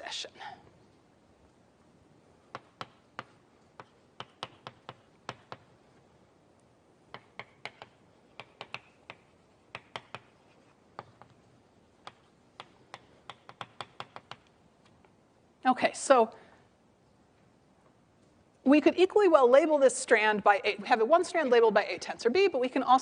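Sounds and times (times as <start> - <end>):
sharp taps and clicks: 2.5 - 5.7, 7.1 - 10.3, 12.0 - 14.6.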